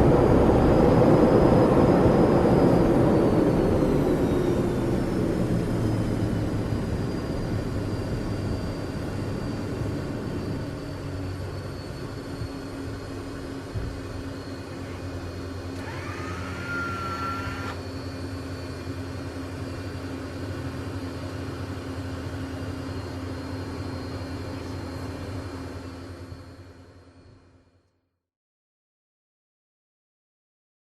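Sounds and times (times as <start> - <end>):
short rising whine: 0.0 - 20.4
jet engine hum in cabin: 0.0 - 28.1.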